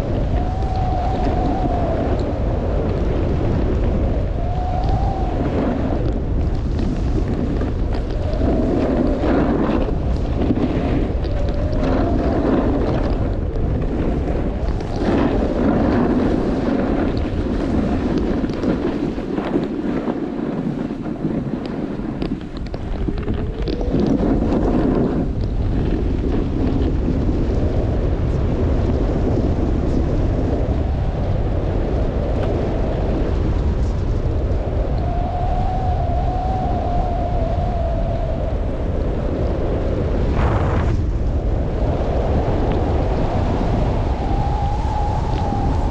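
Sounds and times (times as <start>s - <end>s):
wind buffeting microphone: 0.0s - 45.9s
skis sliding on snow: 5.4s - 30.6s.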